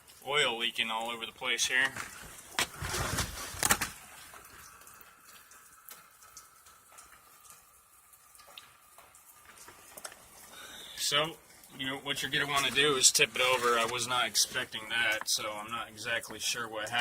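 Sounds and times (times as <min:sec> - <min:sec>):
faint trickling hiss: 0:00.0 - 0:17.0
rustling and knocking of handling: 0:01.8 - 0:04.0.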